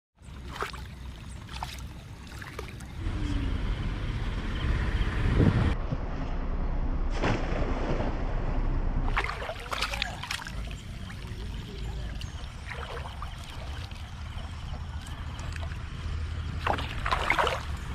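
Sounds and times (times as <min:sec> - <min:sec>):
water splashing: 0:00.2 - 0:03.0, 0:07.1 - 0:17.9
wind buffeting microphone: 0:04.6 - 0:06.5.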